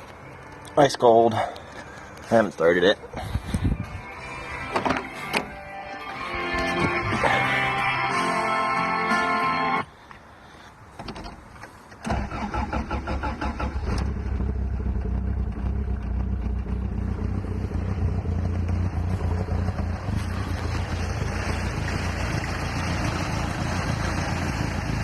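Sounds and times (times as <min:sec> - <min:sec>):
starter motor cranking: 0:12.0 - 0:14.4
engine idling: 0:12.1 - 0:25.0.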